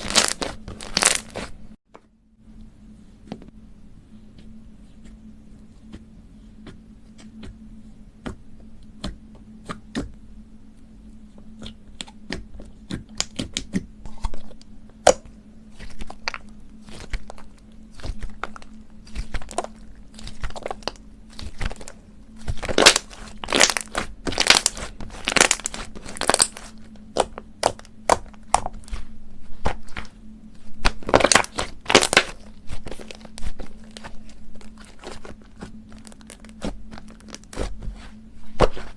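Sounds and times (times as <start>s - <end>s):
slime popping and crackling: 0.0s - 1.5s, 15.8s - 30.1s, 30.8s - 37.8s
steady low hum: 0.0s - 38.9s.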